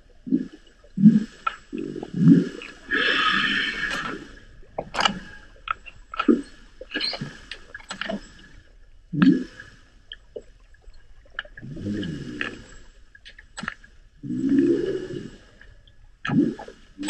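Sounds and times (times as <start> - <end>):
sharp underwater clicks: 4.8 - 8.2, 12.4 - 13.9
whale low grunt: 11.6 - 12.6.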